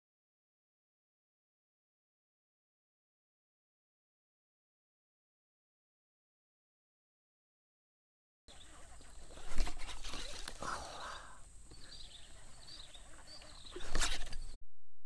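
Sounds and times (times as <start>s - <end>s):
birds chirping: 8.5s - 14.6s.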